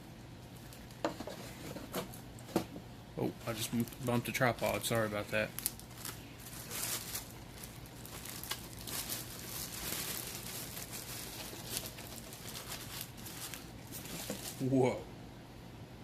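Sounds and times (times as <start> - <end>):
faint low hum: 0.0 - 16.0
packaging rustling and clicking: 3.6 - 14.6.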